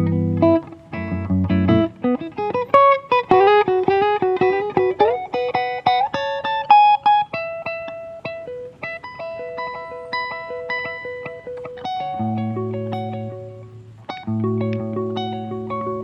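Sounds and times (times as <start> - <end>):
acoustic guitar plucking: 0.0 - 16.0.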